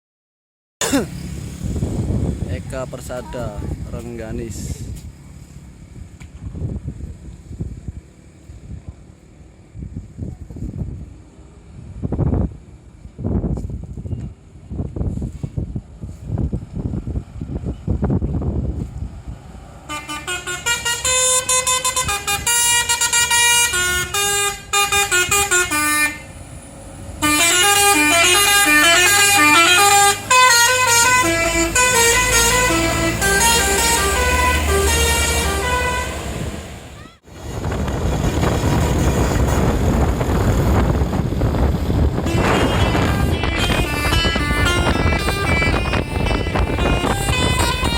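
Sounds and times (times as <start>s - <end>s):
wind and road rush: 0.8s - 47.9s
musical bus horn tune: 19.8s - 26.3s, 27.2s - 36.6s, 42.2s - 47.9s.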